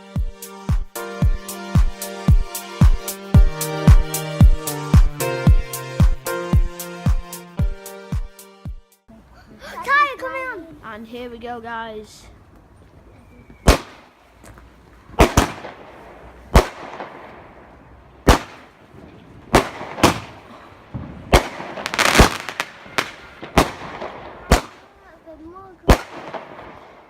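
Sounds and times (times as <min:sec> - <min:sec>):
fireworks bangs echoing: 0:13.6 - 0:14.1, 0:15.2 - 0:25.1, 0:25.8 - 0:27.0
firework crackling: 0:15.2 - 0:17.6, 0:18.2 - 0:18.8, 0:19.4 - 0:25.1, 0:25.8 - 0:27.0.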